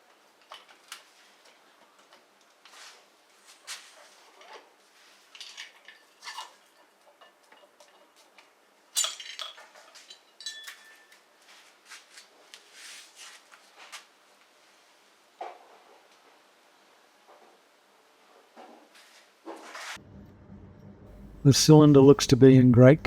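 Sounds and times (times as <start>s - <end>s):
metal engine parts clinking: 5.3s - 11.2s.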